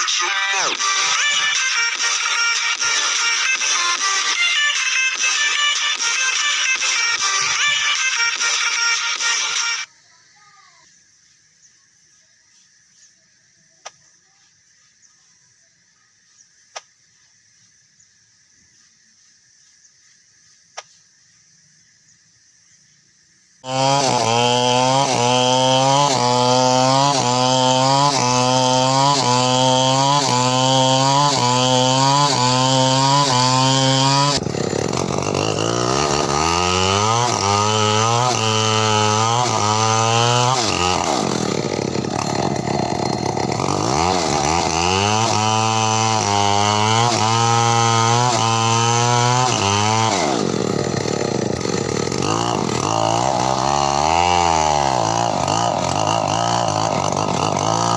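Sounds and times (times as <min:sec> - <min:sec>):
chainsaw engine revving: 0:00.0 - 0:09.9, 0:23.6 - 0:57.9.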